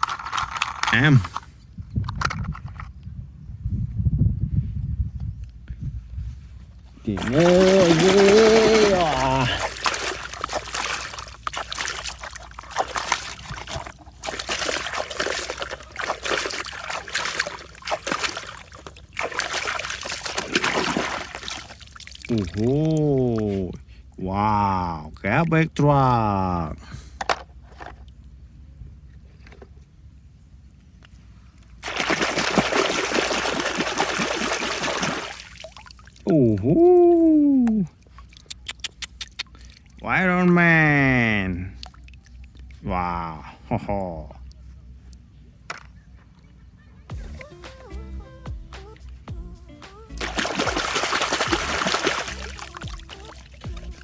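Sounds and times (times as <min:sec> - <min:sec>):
clicks and scrapes: 0:00.0 - 0:03.0
water splashing and trickling: 0:07.0 - 0:25.0, 0:31.8 - 0:45.3, 0:48.7 - 0:54.0.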